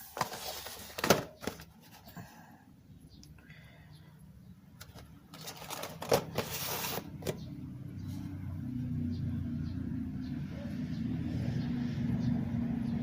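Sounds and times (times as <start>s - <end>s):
packaging rustling: 0.0s - 2.1s, 4.8s - 7.4s.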